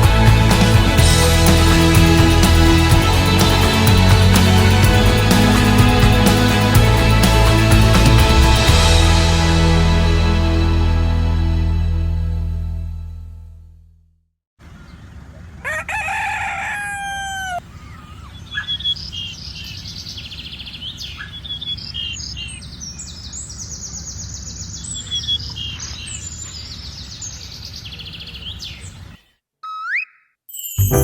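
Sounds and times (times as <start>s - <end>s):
rooster crowing: 15.6s - 17.6s
small birds chirping: 17.5s - 30.4s.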